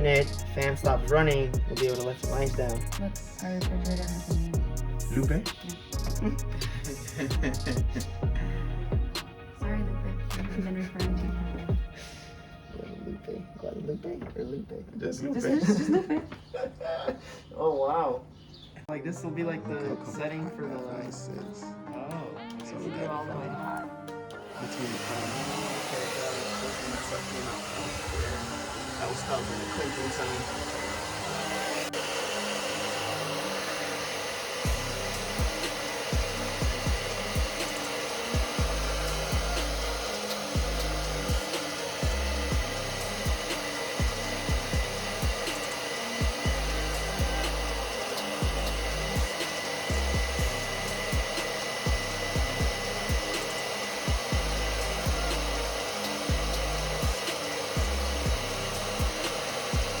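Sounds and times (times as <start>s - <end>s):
hair dryer blowing: 0.0s - 9.3s, 24.1s - 60.0s
background music with low beat: 0.0s - 12.0s, 31.9s - 60.0s.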